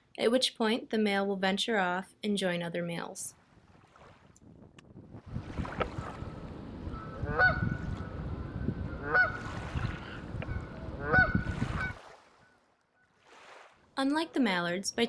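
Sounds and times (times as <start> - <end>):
wind rumble on microphone: 3.6 - 12.0
geese honking: 6.9 - 9.5, 10.4 - 12.6.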